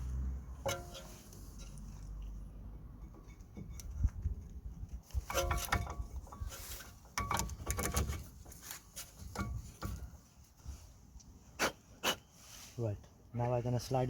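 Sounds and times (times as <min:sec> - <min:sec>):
metal clinking and scraping: 0:00.0 - 0:02.2, 0:05.1 - 0:10.3
ringing metal clatter: 0:05.2 - 0:08.3.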